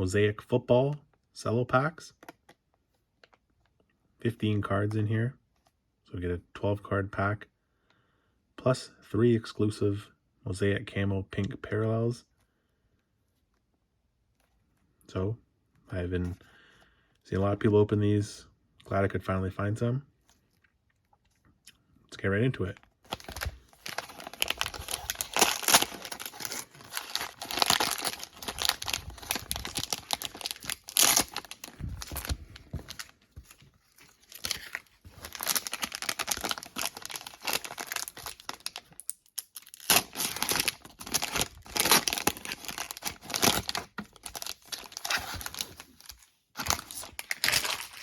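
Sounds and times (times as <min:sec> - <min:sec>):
cellophane wrapper crinkling and tearing: 0:22.8 - 0:48.0.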